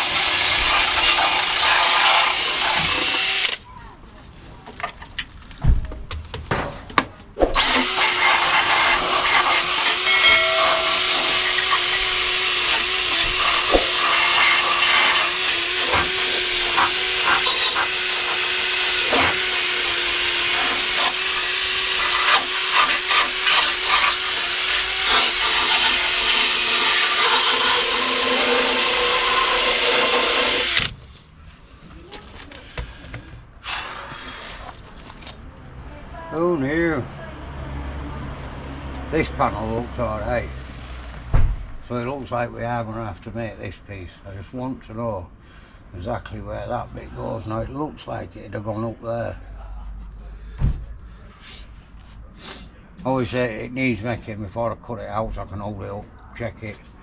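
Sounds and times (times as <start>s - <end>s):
electric drill on sheet metal: 0.0s - 3.6s, 7.6s - 30.9s.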